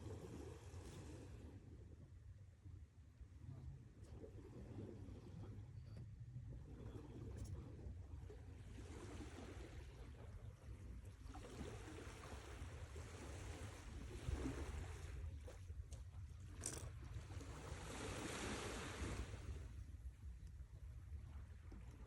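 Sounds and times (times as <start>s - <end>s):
sea waves washing in: 17.4s - 19.8s.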